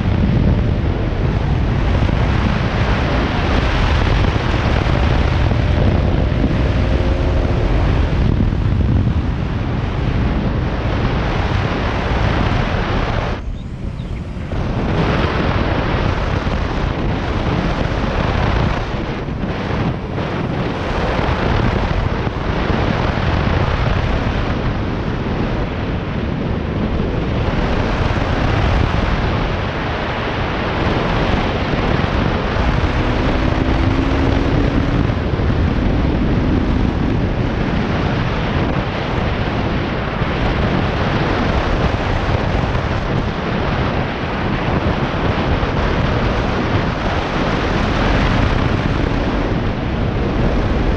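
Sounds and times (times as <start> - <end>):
motorcycle engine running: 0.0 - 23.6, 30.9 - 38.1
wind buffeting microphone: 0.0 - 50.9.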